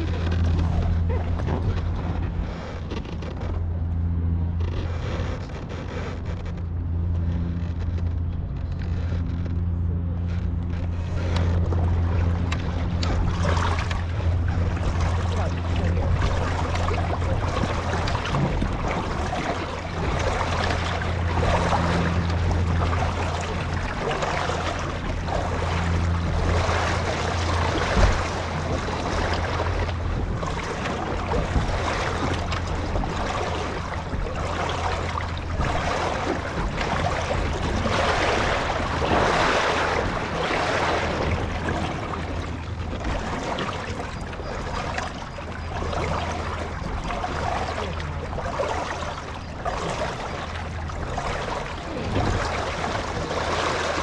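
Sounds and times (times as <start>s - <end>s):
wind on microphone: 0.0s - 6.8s
steady low hum: 0.0s - 54.0s
water rushing past boat: 0.0s - 54.0s.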